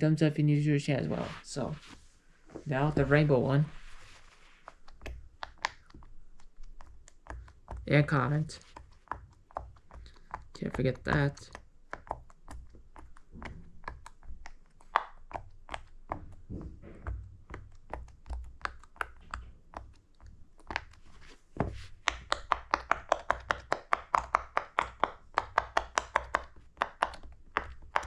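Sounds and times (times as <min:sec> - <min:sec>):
pop-it toy bubbles popping: 0:22.0 - 0:28.0.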